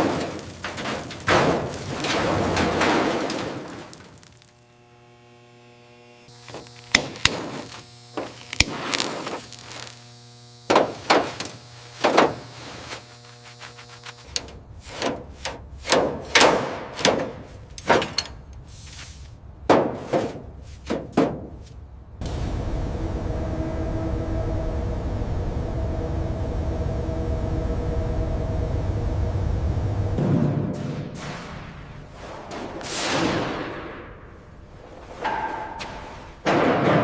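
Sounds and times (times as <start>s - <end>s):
steady hum: 0.0s - 36.5s
sharp knocks and thuds: 19.7s - 21.6s.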